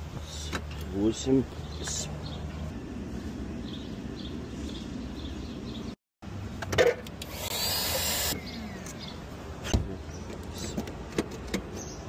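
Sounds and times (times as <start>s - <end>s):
small motor-driven tool whirring: 7.2s - 8.4s.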